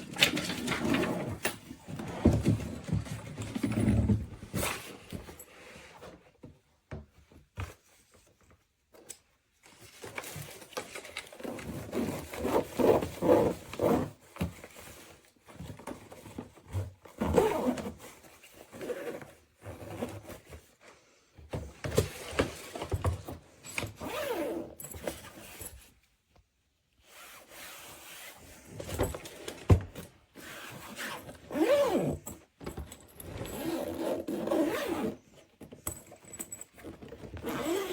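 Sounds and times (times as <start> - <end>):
suitcase rubbing and scraping: 0.1 - 5.5, 11.6 - 14.2, 17.2 - 20.6, 23.9 - 25.7, 27.1 - 32.3, 33.1 - 35.3, 36.5 - 37.9
suitcase zipper pulls: 11.7 - 14.1, 17.2 - 17.9, 18.7 - 20.3, 24.0 - 25.6, 30.4 - 32.4, 33.2 - 35.2, 37.4 - 37.9.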